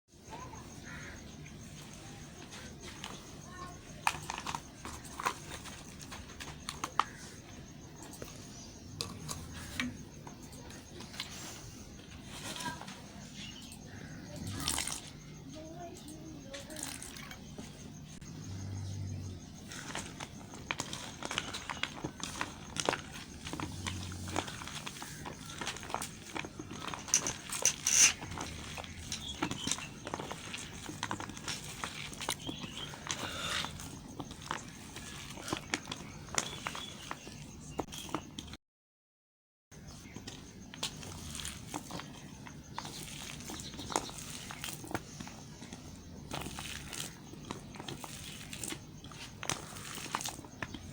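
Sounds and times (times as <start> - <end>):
knife scraping soap: 24.4 - 33.8
knife carving hard soap: 26.8 - 30.8.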